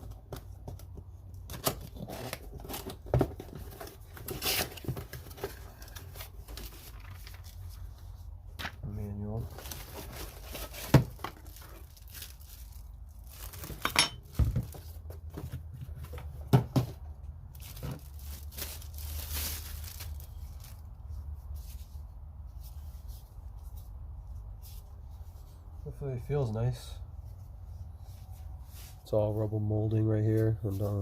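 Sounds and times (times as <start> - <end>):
packaging rustling and crinkling: 0.0 - 22.0.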